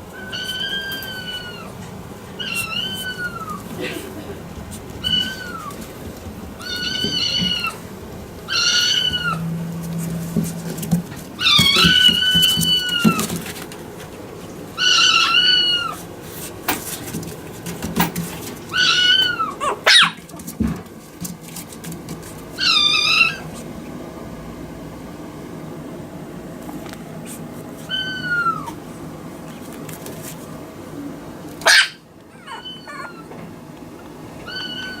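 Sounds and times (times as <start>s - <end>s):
puppy whining: 0.0s - 5.9s, 6.5s - 7.8s, 8.5s - 16.1s, 18.7s - 20.4s, 22.5s - 24.0s, 27.2s - 29.9s, 31.6s - 35.0s.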